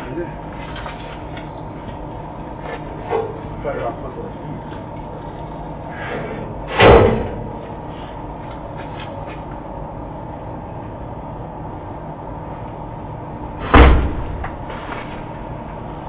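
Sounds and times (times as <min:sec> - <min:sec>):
steady background hum: 0:00.0 - 0:16.0
loud slam: 0:06.7 - 0:07.5, 0:13.6 - 0:14.4.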